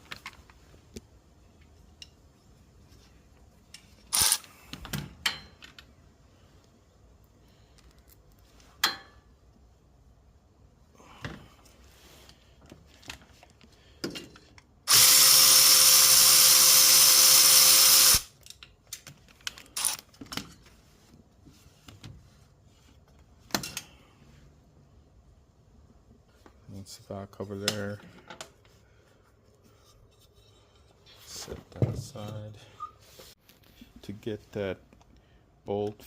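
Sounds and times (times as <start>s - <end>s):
power drill running: 4.1s - 4.4s, 14.9s - 18.3s.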